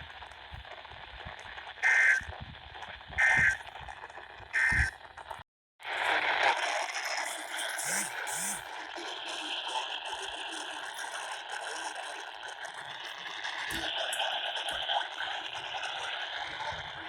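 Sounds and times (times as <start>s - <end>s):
radio static: 0.0s - 5.4s, 7.1s - 10.8s
digital data tones: 1.8s - 2.3s, 3.2s - 3.7s, 4.5s - 5.0s.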